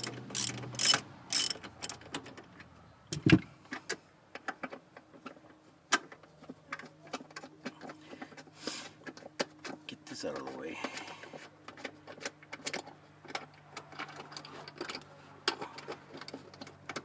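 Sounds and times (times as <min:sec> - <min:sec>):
ratchet wrench clicking: 0:00.0 - 0:02.0.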